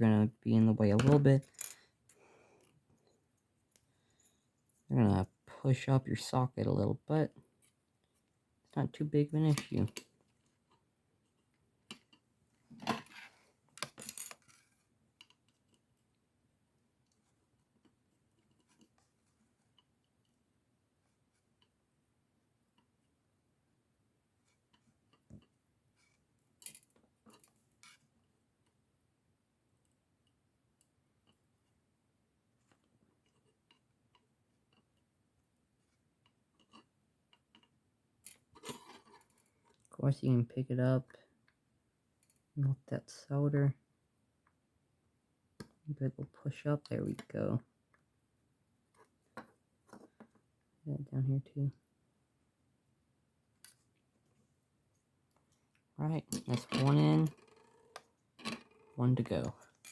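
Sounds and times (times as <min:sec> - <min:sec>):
small hard parts clattering on workbench: 0:12.8 - 0:14.7, 0:56.3 - 0:58.9
small clicks of parts handled: 0:13.8 - 0:15.8, 0:55.3 - 0:59.9.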